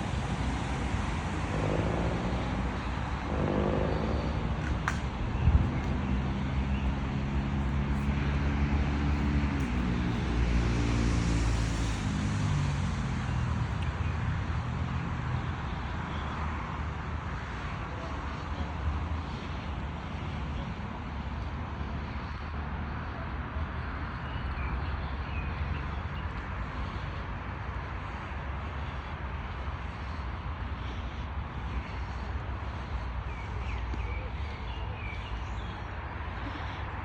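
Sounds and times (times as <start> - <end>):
road traffic rumble: 0.0 - 37.0
vehicle engine passing: 0.4 - 13.5.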